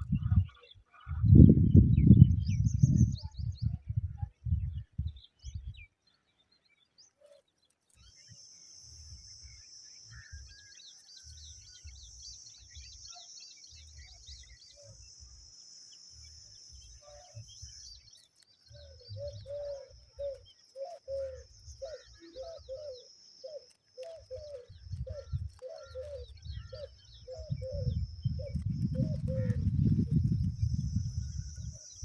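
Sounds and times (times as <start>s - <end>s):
high bird chirps: 6.8s - 32.0s.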